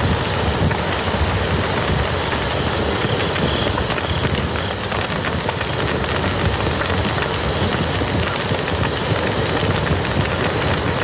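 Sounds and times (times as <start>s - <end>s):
campfire crackling: 0.0s - 11.0s
river flowing: 0.0s - 11.0s.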